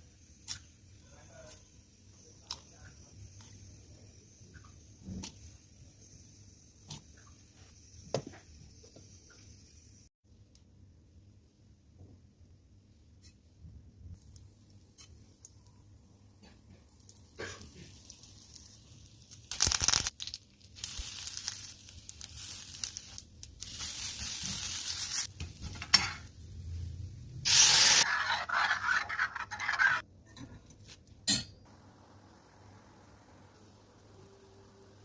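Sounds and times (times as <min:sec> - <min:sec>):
food sizzling in hot oil: 0:00.0 - 0:10.1, 0:16.4 - 0:26.4, 0:27.4 - 0:30.0
stirring in a pan: 0:28.0 - 0:30.0.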